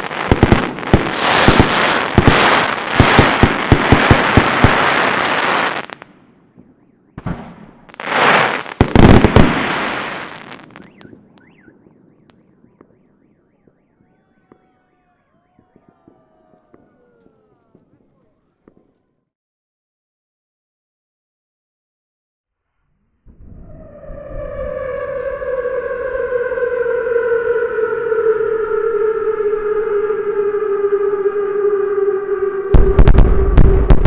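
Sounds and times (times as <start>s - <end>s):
distant alarm-like tones: 0.0s - 6.0s, 8.0s - 18.0s, 23.4s - 34.0s
fireworks crackling and banging: 0.0s - 14.8s.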